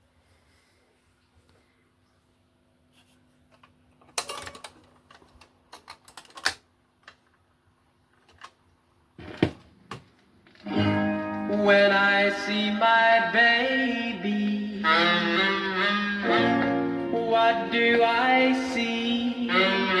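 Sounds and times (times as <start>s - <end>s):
record player clicks and clunks: 3.6s - 7.4s, 8.2s - 8.6s.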